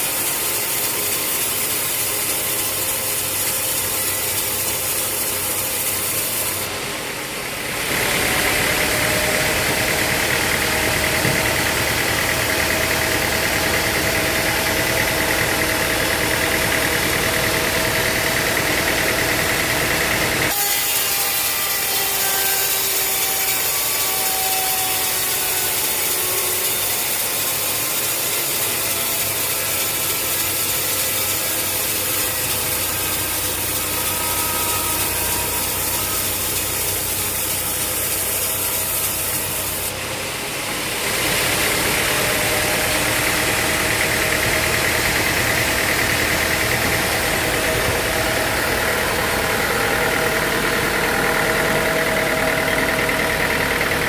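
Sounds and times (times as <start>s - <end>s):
saw cutting through wood: 0.0s - 54.0s
low engine drone: 5.6s - 20.6s, 31.5s - 54.0s.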